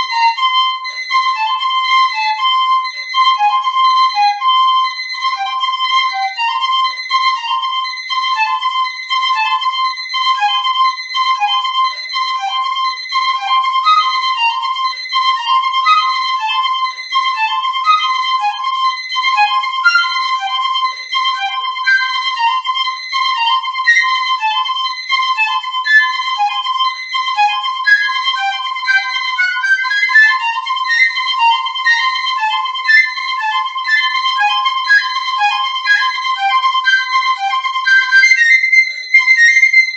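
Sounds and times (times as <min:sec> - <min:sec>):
piccolo playing fast passage: 0:00.0 - 0:39.9.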